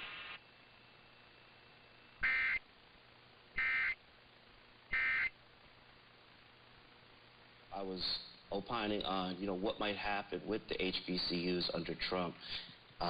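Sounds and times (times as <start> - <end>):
buzzing digital data tones: 2.1 - 2.6, 3.6 - 4.0, 4.9 - 5.4.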